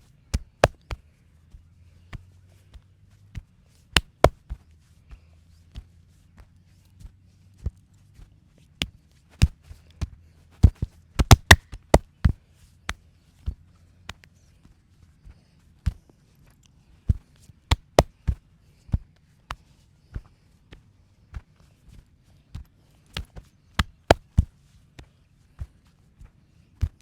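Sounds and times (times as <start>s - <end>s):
hands slapping and tapping: 0.3s - 1.0s, 4.0s - 4.5s, 10.6s - 12.1s, 17.7s - 18.3s, 23.1s - 24.5s.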